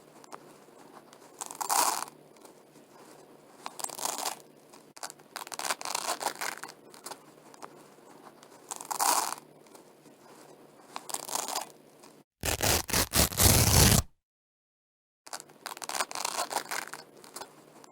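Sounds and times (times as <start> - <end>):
velcro ripping: 12.4 - 14.1.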